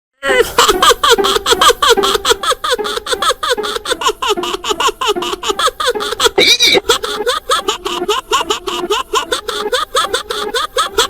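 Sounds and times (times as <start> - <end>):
cartoon child hiccupping: 6.3 - 6.9.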